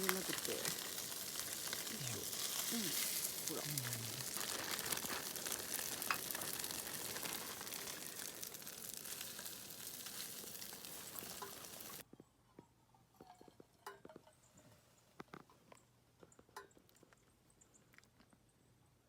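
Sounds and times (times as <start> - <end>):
food sizzling in a hot pan: 0.0 - 12.0.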